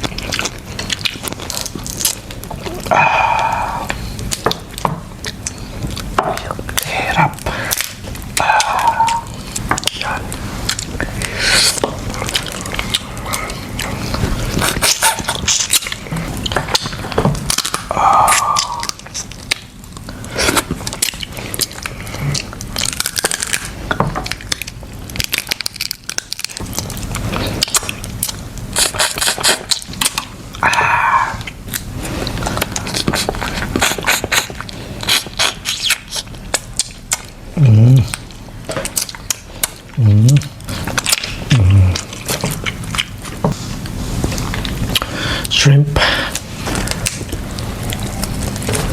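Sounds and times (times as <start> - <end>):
chewing: 0.0 - 48.9
crab shell cracking: 14.6 - 30.3.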